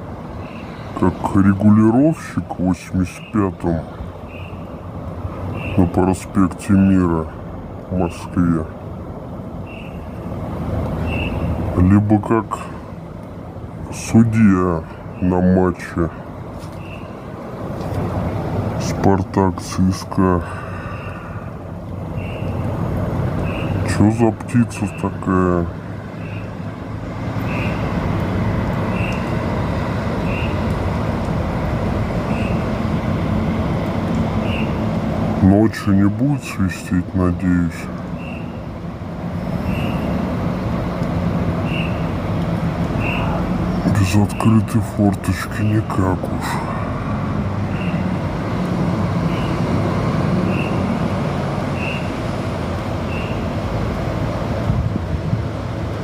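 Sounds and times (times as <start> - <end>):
street traffic hum: 0.0 - 56.0
bird whistling single note: 11.1 - 11.5, 41.7 - 42.0, 50.5 - 50.8, 51.8 - 52.1, 53.1 - 53.4.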